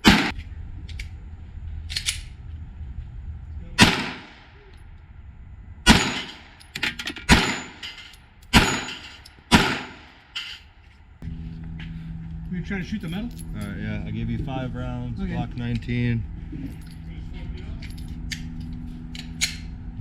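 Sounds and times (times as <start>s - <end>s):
pistol shots: 0.0s - 0.4s, 3.8s - 4.6s, 5.9s - 6.6s, 7.3s - 7.8s, 8.5s - 10.2s.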